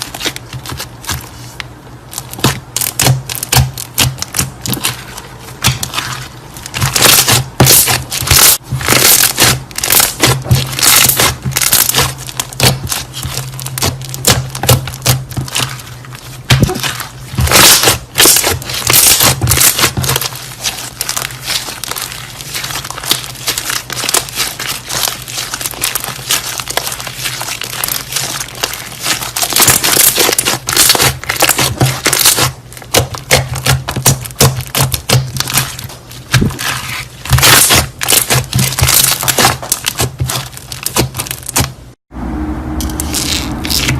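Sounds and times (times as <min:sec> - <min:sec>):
steady low hum: 0:35.3 - 0:43.9.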